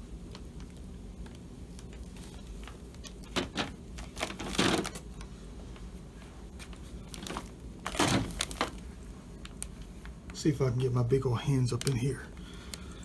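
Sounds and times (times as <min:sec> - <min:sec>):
scraping rustles: 0:01.3 - 0:10.2.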